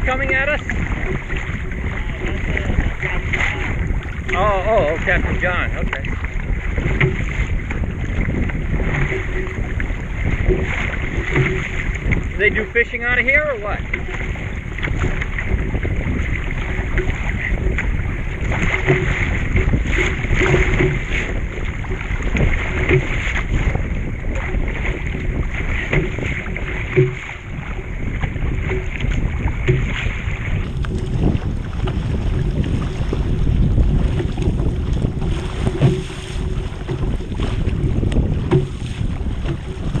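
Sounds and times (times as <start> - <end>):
paddle knocks: 0.0 - 40.0
water splashing around kayak: 0.0 - 40.0
wind rumble on microphone: 0.0 - 40.0.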